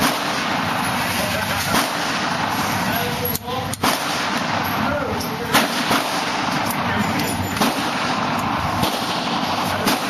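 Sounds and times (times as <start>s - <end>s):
sharp gunshot: 0.0s - 0.8s, 1.6s - 2.6s, 3.8s - 4.7s, 5.5s - 6.6s, 7.6s - 10.0s
noisy background: 0.0s - 10.0s.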